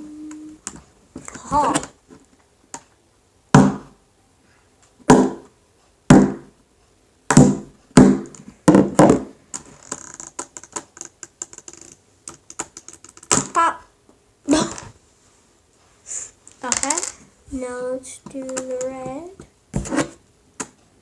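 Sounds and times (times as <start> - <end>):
hammer knocking on plastic: 6.1 - 6.5, 7.3 - 9.3.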